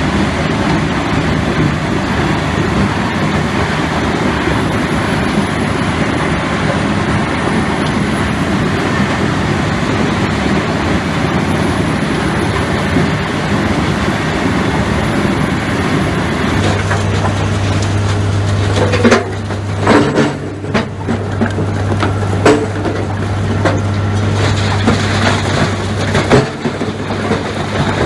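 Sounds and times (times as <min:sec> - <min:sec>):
heavy machine engine running: 0:00.0 - 0:28.0
wood cracking and snapping: 0:16.5 - 0:28.0.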